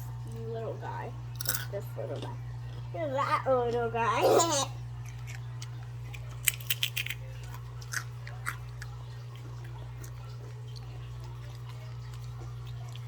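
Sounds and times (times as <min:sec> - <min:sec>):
steady low hum: 0:00.0 - 0:13.0
person chewing: 0:04.9 - 0:13.0
chips crunching: 0:05.0 - 0:13.0.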